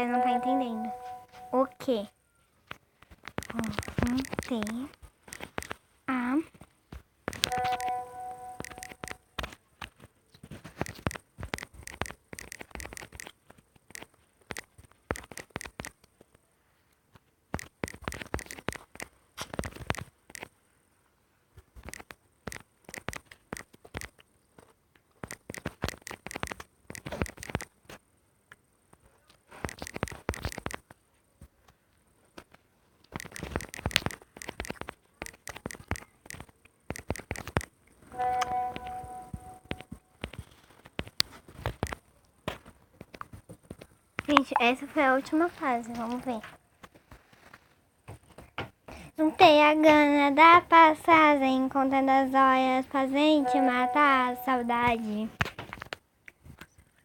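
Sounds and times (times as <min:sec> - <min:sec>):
brief electronic tone: 0:00.2 - 0:01.6, 0:07.5 - 0:09.2, 0:38.1 - 0:39.8
typing taps on a phone: 0:03.0 - 0:05.8, 0:07.3 - 0:09.9, 0:10.7 - 0:16.0, 0:17.5 - 0:20.5, 0:21.8 - 0:24.2, 0:25.2 - 0:27.7, 0:29.6 - 0:30.9, 0:33.1 - 0:42.0
smartphone keyboard taps: 0:07.3 - 0:09.2, 0:10.8 - 0:13.3, 0:33.2 - 0:37.7.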